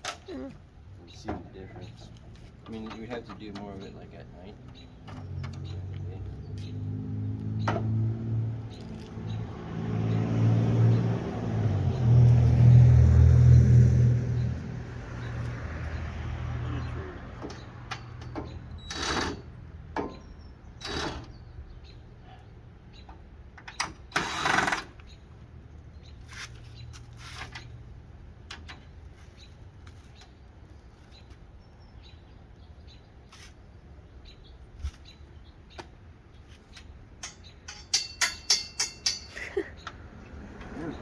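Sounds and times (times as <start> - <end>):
clicks and rattles of hand work: 36.7 - 40.0.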